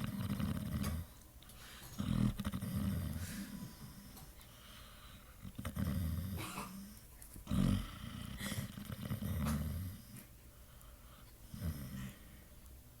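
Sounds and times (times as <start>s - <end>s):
dog snoring: 0.0s - 1.2s, 1.9s - 4.2s, 4.8s - 10.3s, 11.4s - 12.4s.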